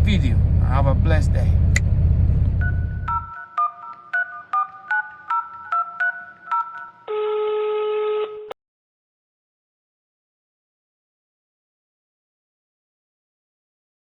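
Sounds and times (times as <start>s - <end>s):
low vehicle rumble: 0.0s - 3.3s.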